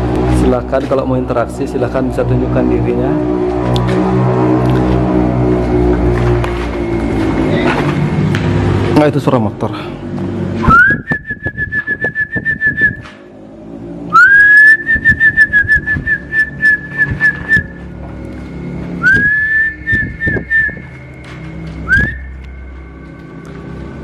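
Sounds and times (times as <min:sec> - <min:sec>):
person whistling with warble: 0:10.6 - 0:13.1, 0:14.1 - 0:17.8, 0:19.0 - 0:21.0, 0:21.8 - 0:22.4.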